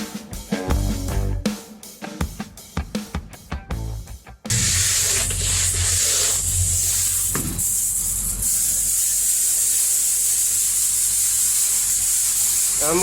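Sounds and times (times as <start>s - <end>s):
steady hiss: 4.5s - 13.0s.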